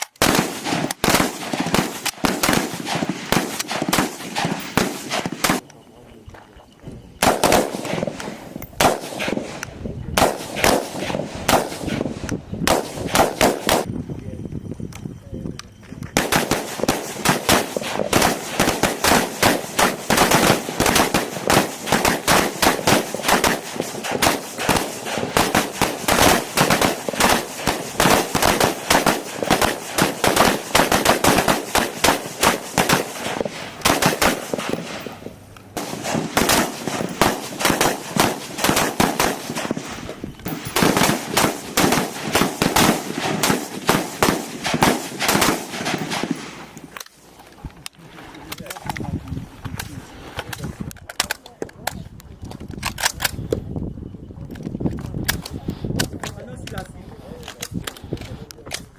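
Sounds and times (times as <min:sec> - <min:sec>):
rapid rifle fire: 0:00.0 - 0:05.6, 0:07.2 - 0:09.6, 0:10.2 - 0:13.9, 0:16.2 - 0:35.2, 0:35.8 - 0:46.7.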